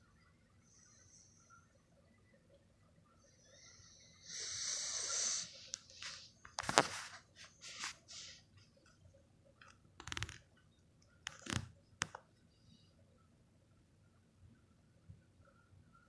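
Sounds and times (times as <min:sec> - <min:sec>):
faint rubbing or rustling: 0:05.4 - 0:08.8.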